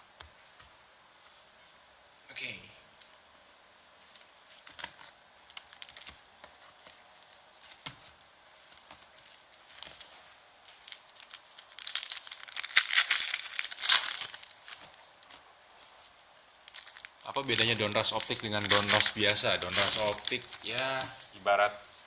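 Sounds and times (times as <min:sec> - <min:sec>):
wrapper crinkling and tearing: 0:04.1 - 0:07.9, 0:08.6 - 0:15.4, 0:16.6 - 0:21.4.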